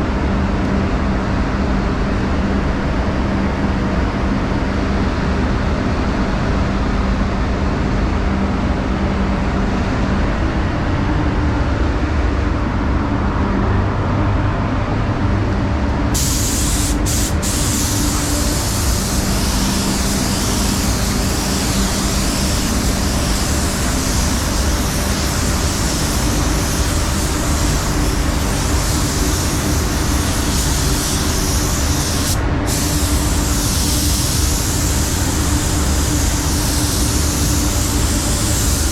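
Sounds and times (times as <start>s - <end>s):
ventilation rushing hum: 0.0s - 38.9s
spray gun hissing: 16.2s - 38.9s.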